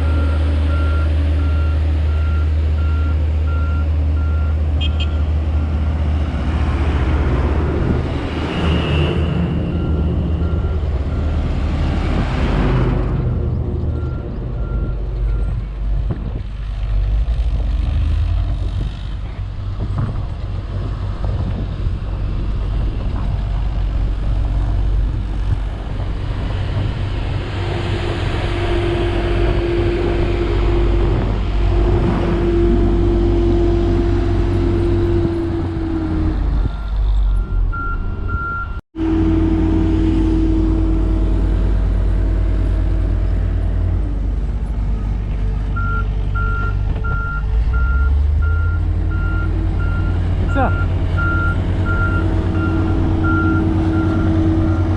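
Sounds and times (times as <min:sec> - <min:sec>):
diesel machinery rumbling: 0:00.0 - 0:54.9
reversing beeps: 0:36.6 - 0:38.8, 0:45.8 - 0:54.9.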